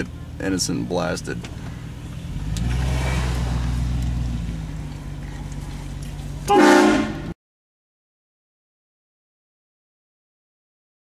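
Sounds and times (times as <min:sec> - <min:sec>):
car engine droning: 0:00.0 - 0:07.4
train horn blast: 0:06.5 - 0:07.4.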